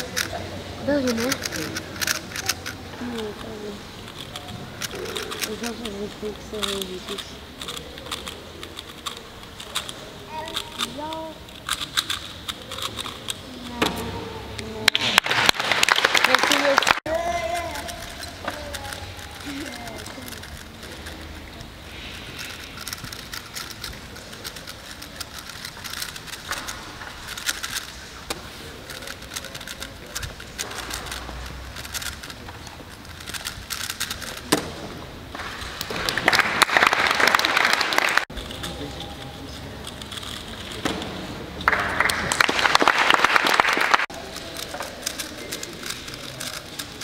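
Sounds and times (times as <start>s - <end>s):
low background murmur: 0.0s - 15.5s, 16.1s - 36.8s, 38.2s - 42.3s, 44.0s - 47.0s
puzzle cube plastic clicking: 0.0s - 34.7s, 38.3s - 41.1s, 44.1s - 47.0s
audience applauding: 14.9s - 17.1s, 36.0s - 38.3s, 41.6s - 44.1s.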